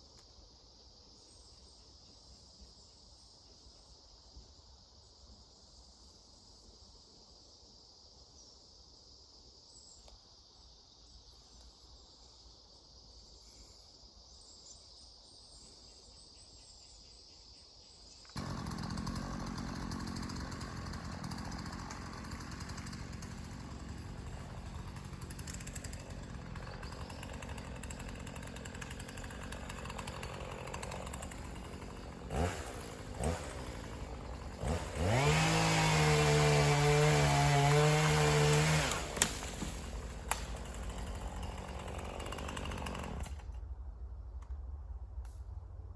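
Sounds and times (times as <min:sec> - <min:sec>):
chainsaw engine idling and revving: 0:18.3 - 0:43.7.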